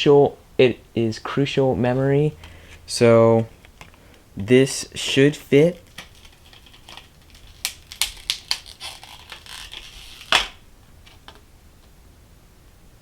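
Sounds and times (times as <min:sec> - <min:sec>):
plastic packaging crackling: 0:05.7 - 0:11.4
plastic packaging snapping: 0:05.8 - 0:11.4.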